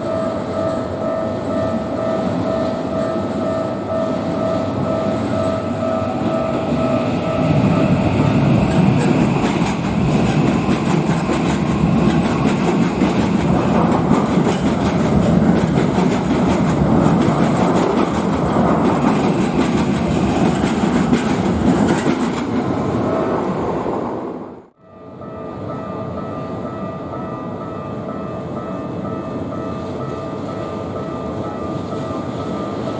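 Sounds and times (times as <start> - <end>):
level crossing warning bell: 0.0 - 21.5, 24.8 - 32.9
electric train rumbling past: 0.0 - 32.9
wheels clacking over rail joints: 5.2 - 23.1.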